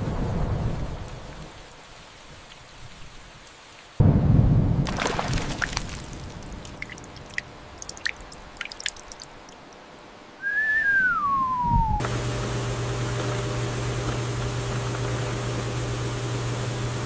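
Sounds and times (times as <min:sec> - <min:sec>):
rain: 0:00.0 - 0:10.5, 0:12.0 - 0:17.0
water drips: 0:04.9 - 0:10.1
whistle gliding down in pitch: 0:10.4 - 0:12.1
steady machine hum: 0:11.9 - 0:17.0.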